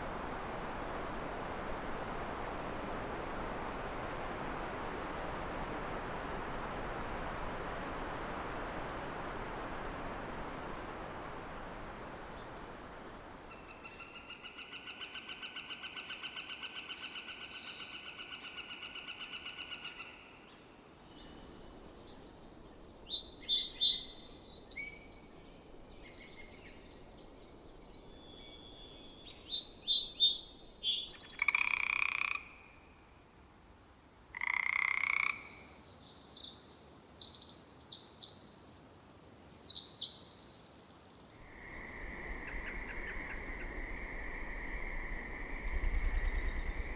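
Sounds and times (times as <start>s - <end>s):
frog croaks: 31.4s - 32.6s, 34.3s - 35.6s
sparrow song: 35.7s - 46.9s.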